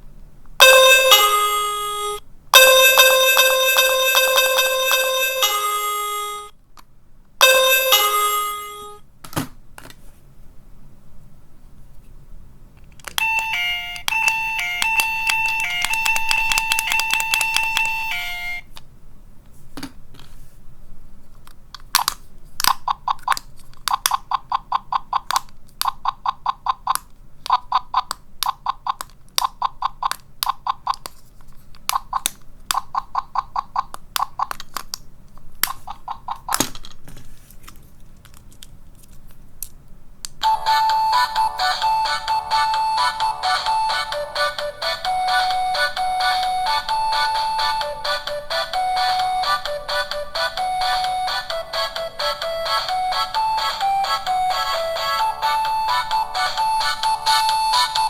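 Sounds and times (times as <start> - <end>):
electronic toy jingle: 0.6 - 6.5, 7.4 - 9.0, 13.2 - 18.6, 40.4 - 58.0
electronic tune: 0.6 - 6.5, 7.4 - 9.0, 40.4 - 58.0.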